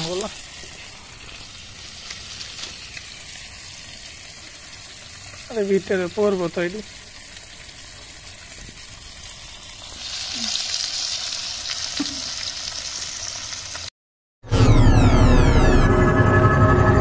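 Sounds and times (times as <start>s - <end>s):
fish frying in hot oil: 0.0s - 13.9s
music with falling tones: 14.5s - 17.0s.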